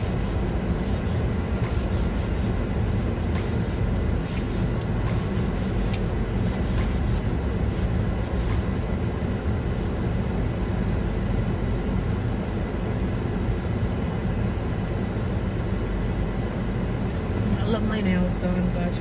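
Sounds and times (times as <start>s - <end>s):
crackling clicks: 0.0s - 8.6s
low rumble inside car cabin: 0.0s - 19.0s.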